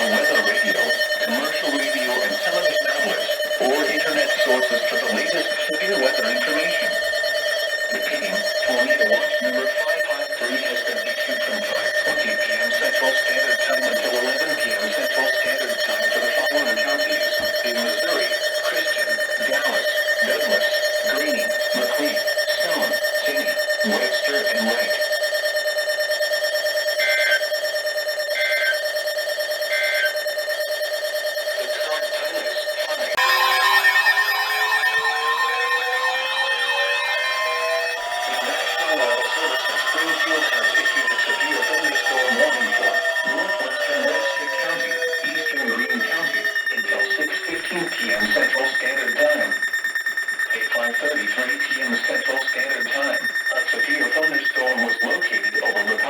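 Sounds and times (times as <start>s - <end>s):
muffled garbled voice: 0.0s - 25.1s, 31.4s - 33.3s, 38.0s - 49.6s, 50.5s - 56.0s
electronic alarm tone: 0.0s - 56.0s
warbling data bursts: 0.0s - 56.0s.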